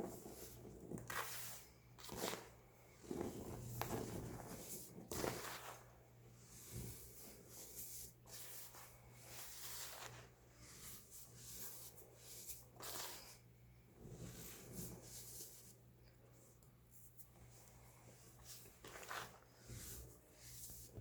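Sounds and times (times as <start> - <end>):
baking soda crunching: 18.4 - 20.9.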